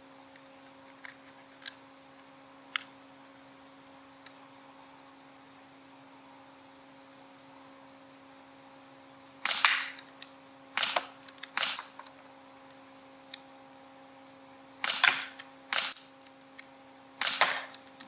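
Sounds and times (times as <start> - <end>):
air pistol shots popping: 9.4 - 10.0, 14.8 - 16.0.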